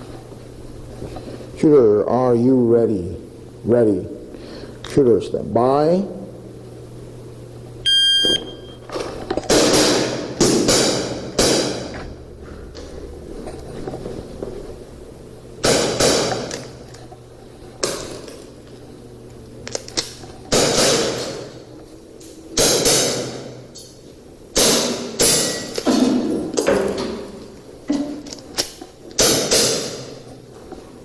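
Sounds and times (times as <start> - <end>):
shot timer beep: 7.9 - 8.8.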